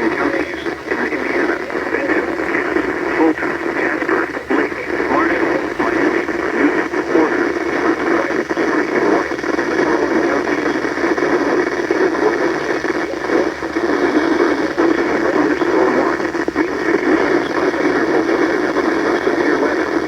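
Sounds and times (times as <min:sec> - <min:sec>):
muffled radio static: 0:00.0 - 0:20.0.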